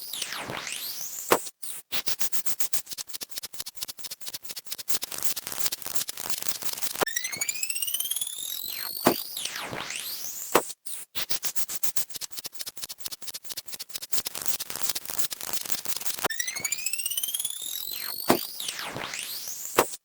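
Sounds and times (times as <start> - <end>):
fast run of clicks: 2.4 - 7.1, 11.6 - 18.7.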